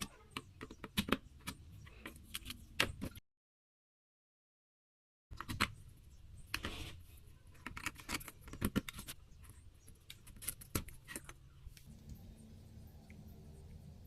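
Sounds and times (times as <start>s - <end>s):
low steady hum: 11.6s - 14.0s.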